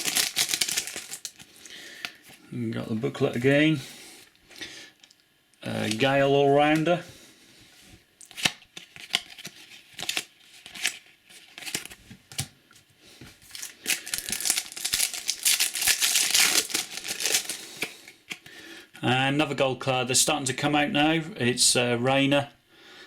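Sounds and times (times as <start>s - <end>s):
wrapper tearing and crinkling: 0.0s - 1.5s, 8.2s - 12.4s, 13.4s - 17.9s.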